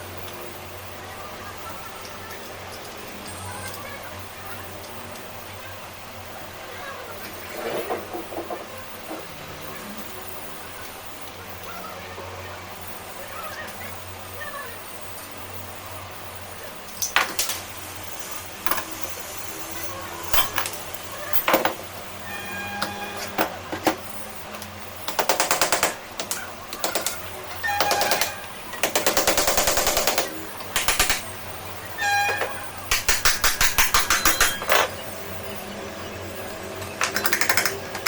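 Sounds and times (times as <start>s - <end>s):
rapid clicking bursts: 24.1s - 31.9s, 32.7s - 34.7s, 36.4s - 38.0s.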